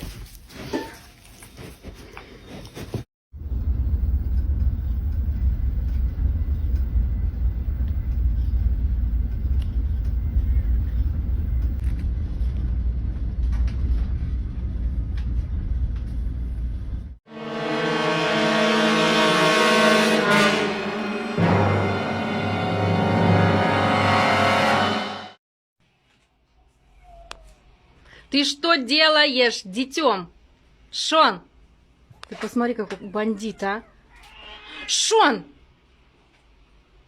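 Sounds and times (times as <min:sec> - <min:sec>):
loud low rumble: 0:03.4 - 0:17.2.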